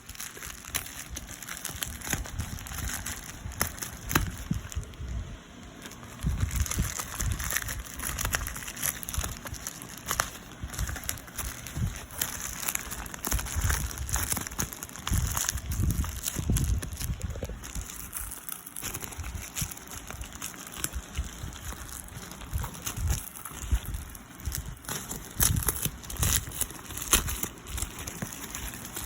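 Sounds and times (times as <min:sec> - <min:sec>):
plastic packaging crinkling: 0:00.0 - 0:29.0.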